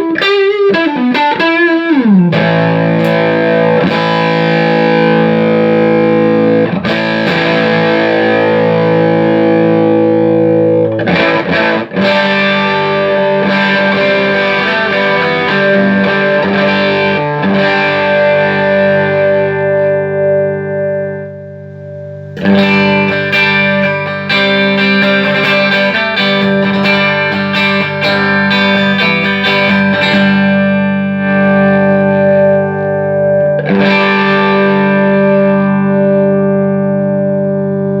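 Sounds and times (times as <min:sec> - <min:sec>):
electric guitar chords: 0:00.0 - 0:38.0.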